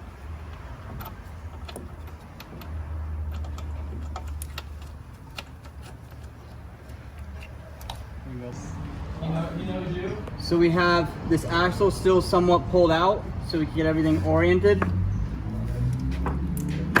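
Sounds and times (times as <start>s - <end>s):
light metallic clicks and taps: 0.5s - 8.1s.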